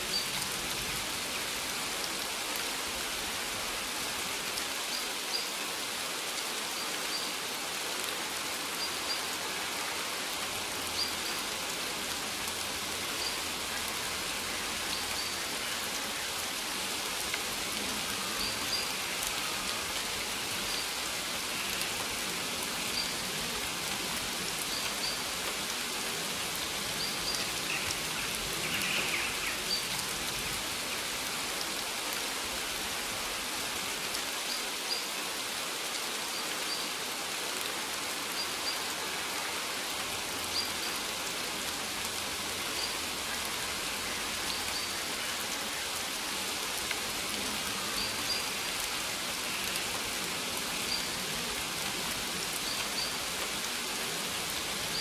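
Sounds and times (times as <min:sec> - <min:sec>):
rain pattering on plants: 0:00.0 - 0:55.0.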